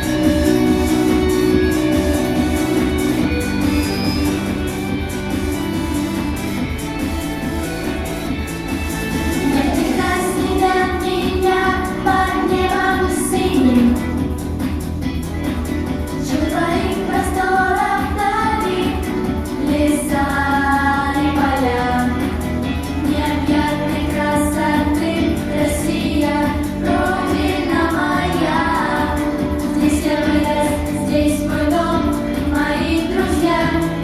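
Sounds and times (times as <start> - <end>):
instrumental backing with beat: 0.0 - 34.0
high singing voice: 9.4 - 14.1.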